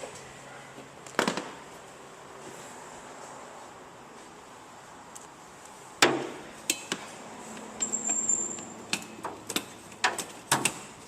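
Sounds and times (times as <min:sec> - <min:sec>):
high ringing note: 0:07.8 - 0:08.7.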